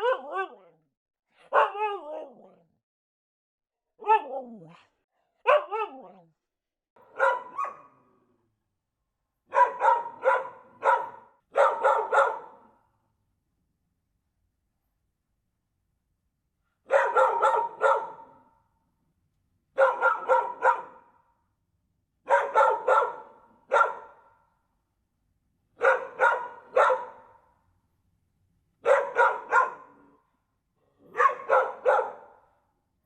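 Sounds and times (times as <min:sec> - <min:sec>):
dog barking: 0:00.0 - 0:02.6, 0:04.0 - 0:06.1, 0:07.0 - 0:08.1, 0:09.5 - 0:12.9, 0:16.8 - 0:18.6, 0:19.8 - 0:21.2, 0:22.2 - 0:24.4, 0:25.8 - 0:27.5, 0:28.8 - 0:30.2, 0:31.0 - 0:32.6.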